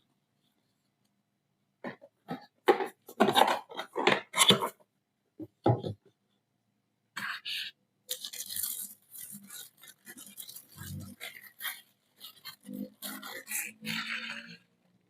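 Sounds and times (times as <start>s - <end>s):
packaging scraping and rustling: 8.1s - 14.6s.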